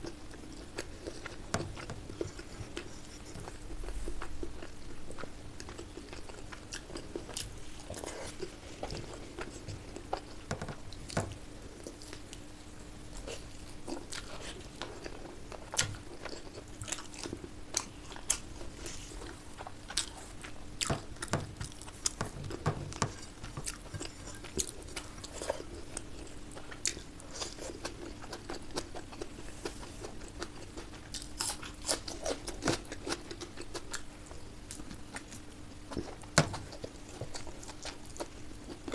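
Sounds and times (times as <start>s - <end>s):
faint steady hum: 0.0s - 38.9s
person chewing food: 0.0s - 38.9s.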